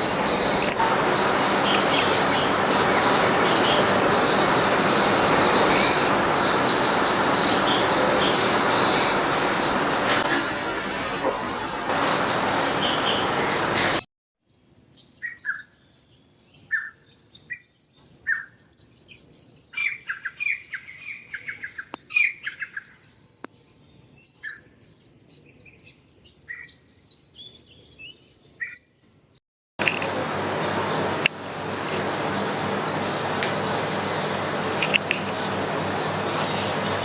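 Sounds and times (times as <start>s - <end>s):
loud steady noise: 0.0s - 14.0s, 29.8s - 37.0s
small birds chirping: 0.0s - 37.0s.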